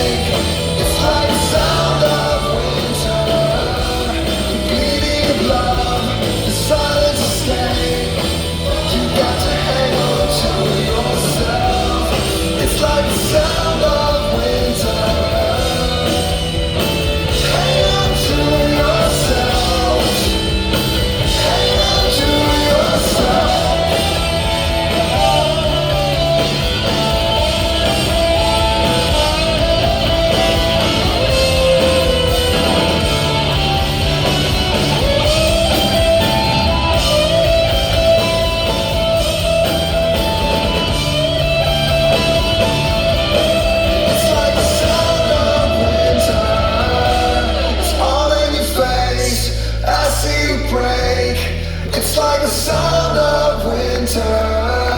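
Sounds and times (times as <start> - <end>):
rock music with singing: 0.0 - 54.9.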